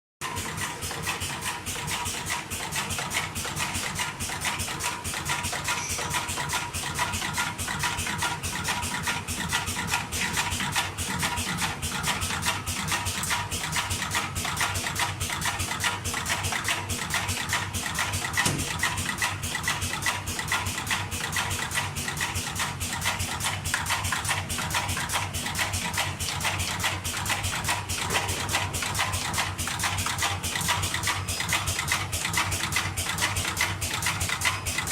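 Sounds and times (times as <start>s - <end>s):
steady machine hum: 0.2s - 34.9s
spot welding machine clicking: 9.4s - 34.9s.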